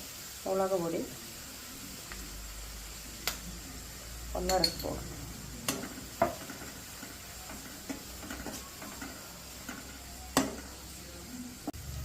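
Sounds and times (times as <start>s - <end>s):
faint sizzle: 0.0s - 12.0s
spoon knocking on pan: 4.4s - 5.0s, 5.6s - 10.8s
spoon stirring in metal pan: 4.4s - 11.0s.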